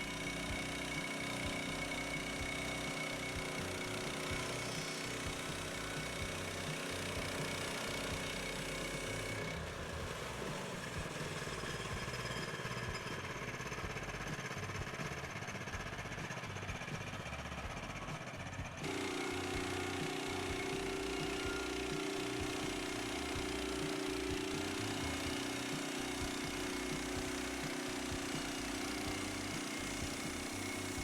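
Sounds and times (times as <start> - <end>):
sawmill engine running: 0.0 - 31.0.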